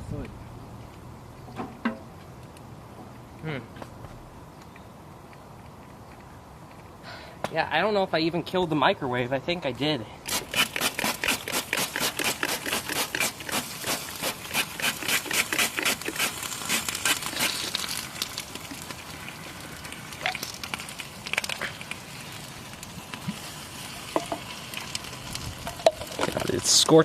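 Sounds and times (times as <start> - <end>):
hot plastic crackling: 10.2 - 27.0.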